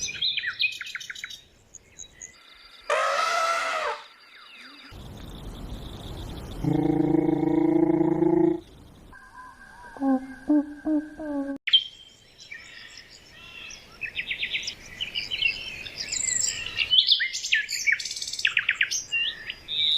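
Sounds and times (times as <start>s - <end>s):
birds chirping and singing: 0.0s - 7.6s, 8.5s - 19.9s
low-pitched animal call: 2.9s - 4.9s, 6.6s - 8.6s, 9.8s - 11.6s.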